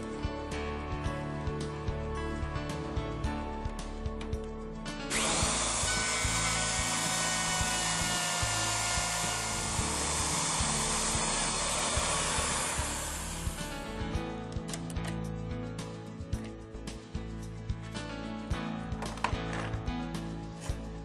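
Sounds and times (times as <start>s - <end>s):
background music: 0.0s - 21.0s
electric router cutting wood: 5.1s - 13.8s.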